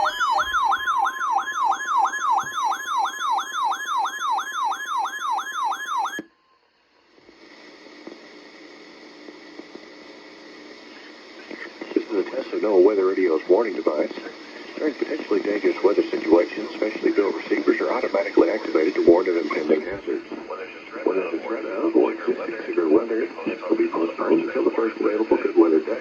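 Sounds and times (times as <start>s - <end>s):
electronic warbling alarm tone: 0.0s - 6.2s
radio static hiss: 7.2s - 26.0s.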